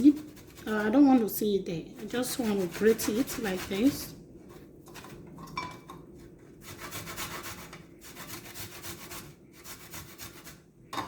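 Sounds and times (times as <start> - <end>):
ginger grated on a grater: 0.0 - 1.3, 2.0 - 4.1, 6.6 - 10.6.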